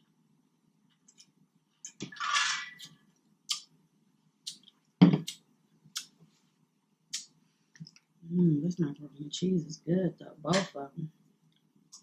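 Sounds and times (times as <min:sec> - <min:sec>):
lip smacks: 0:02.8 - 0:03.8, 0:04.4 - 0:06.2.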